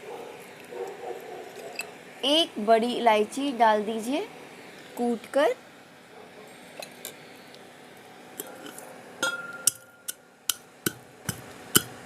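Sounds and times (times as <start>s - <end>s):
pestle pounding spices in mortar: 10.5s - 12.0s.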